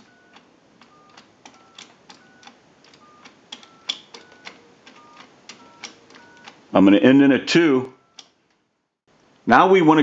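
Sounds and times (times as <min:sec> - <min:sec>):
keypad key clicks: 0:00.0 - 0:06.6
touch-tone keypad beeps: 0:00.0 - 0:06.6, 0:07.9 - 0:08.4.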